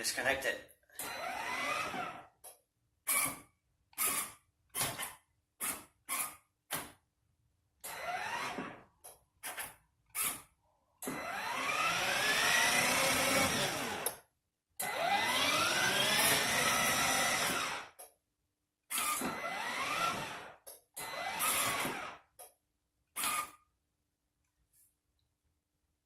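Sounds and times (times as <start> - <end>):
electric motors whirring: 1.0 - 2.2, 7.9 - 8.8, 11.0 - 14.2, 14.8 - 18.0, 19.0 - 22.2.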